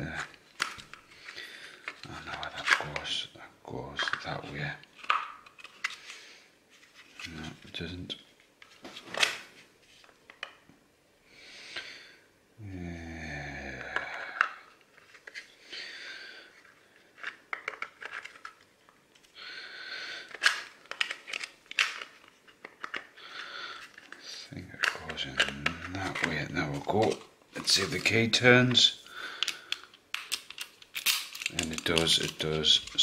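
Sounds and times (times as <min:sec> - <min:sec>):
person humming: 0:12.6 - 0:14.4.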